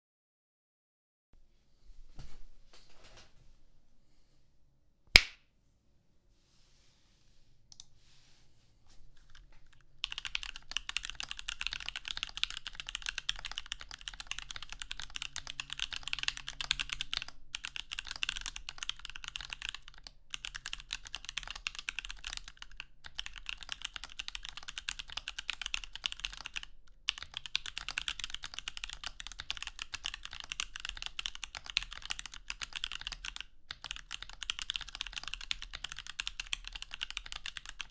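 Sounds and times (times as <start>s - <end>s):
sharp loud click: 5.2s - 5.4s
mechanical keyboard typing: 9.2s - 37.9s.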